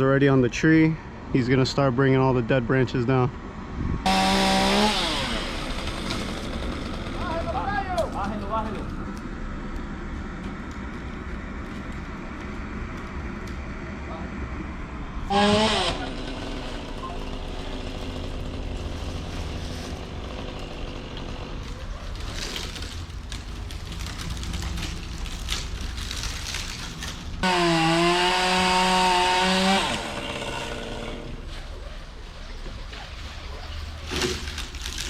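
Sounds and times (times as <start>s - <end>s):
chainsaw cutting wood: 4.1s - 7.5s, 15.2s - 31.6s
chainsaw revving: 4.1s - 7.6s, 15.3s - 23.0s, 27.4s - 31.6s
low engine rumble: 5.5s - 27.5s.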